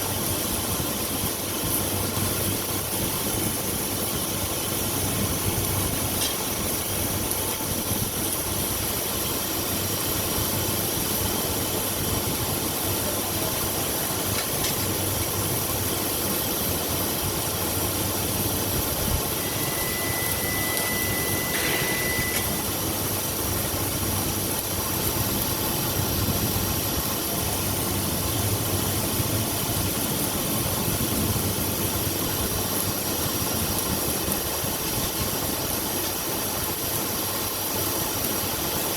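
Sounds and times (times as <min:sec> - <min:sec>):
machinery hum and hiss: 0:00.0 - 0:38.9
high steady tone: 0:19.1 - 0:23.0.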